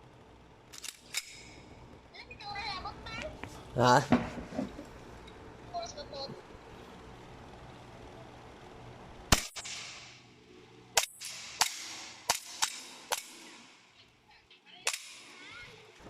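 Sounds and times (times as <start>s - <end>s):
airsoft pistol shots: 9.3s - 10.2s, 11.0s - 13.8s, 14.8s - 15.3s.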